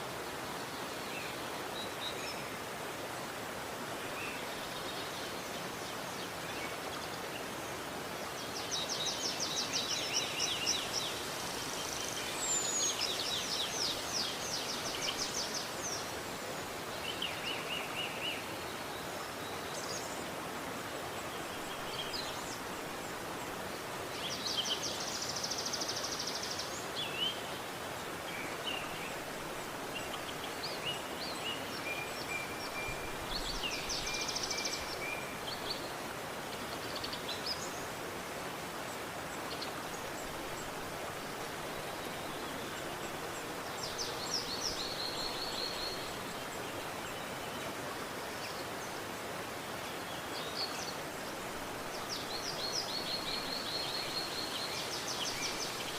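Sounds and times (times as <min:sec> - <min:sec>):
river water flowing: 0:00.0 - 0:55.9.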